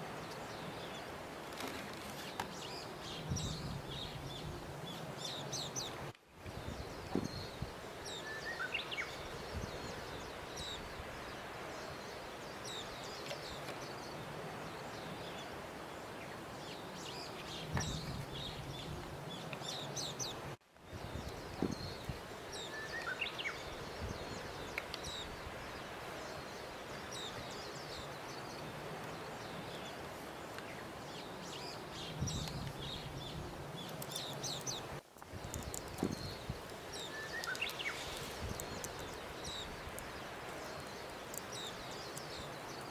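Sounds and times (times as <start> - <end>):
steady outdoor hiss: 0.0 - 42.9
bird chirps: 32.0 - 42.9.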